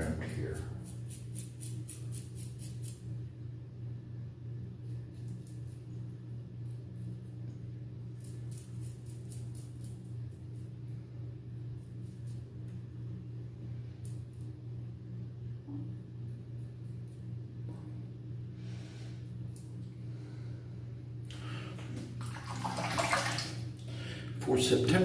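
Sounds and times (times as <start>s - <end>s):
razor scraping stubble: 0.0s - 3.0s
steady low hum: 0.0s - 25.0s.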